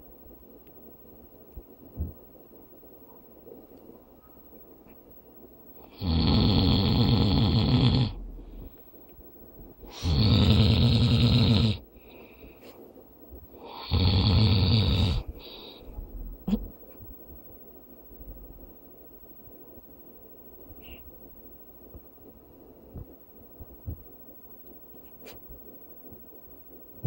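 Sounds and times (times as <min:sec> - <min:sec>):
man snoring loudly: 0:05.9 - 0:08.2, 0:09.8 - 0:11.8, 0:13.6 - 0:15.3.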